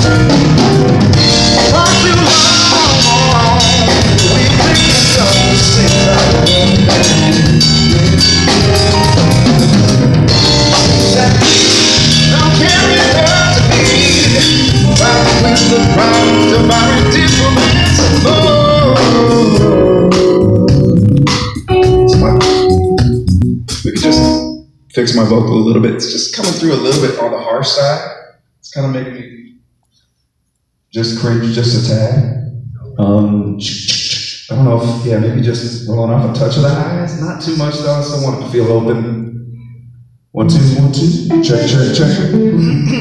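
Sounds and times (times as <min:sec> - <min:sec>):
drum kit: 0:00.0 - 0:24.6
bass: 0:00.0 - 0:28.0, 0:31.0 - 0:43.0
keyboards: 0:00.0 - 0:30.0, 0:31.0 - 0:43.0.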